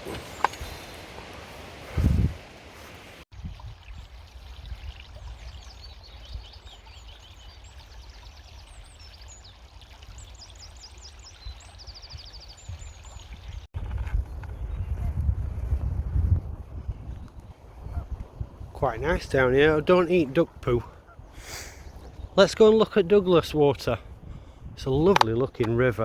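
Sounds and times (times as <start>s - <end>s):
songbirds singing: 0.0s - 1.6s, 3.4s - 13.7s, 16.9s - 26.0s
running water: 0.0s - 13.7s.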